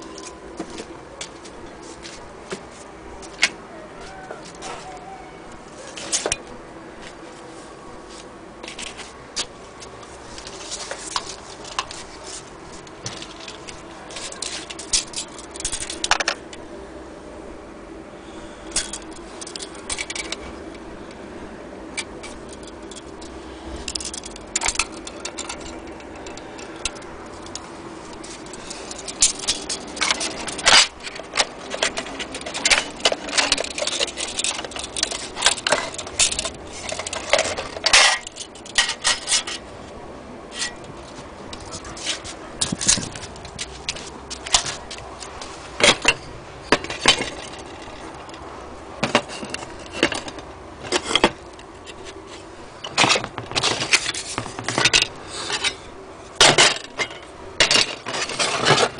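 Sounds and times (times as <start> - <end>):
small hard parts clicking: 8.6 - 16.6, 18.6 - 20.8, 21.9 - 39.6, 40.5 - 55.8, 56.4 - 58.9.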